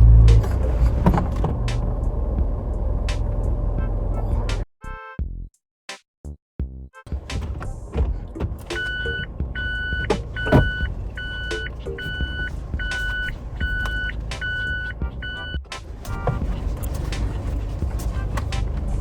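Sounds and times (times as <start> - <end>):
engine and road rumble: 0.0 - 4.7, 7.1 - 19.0
car warning beep: 8.7 - 16.4.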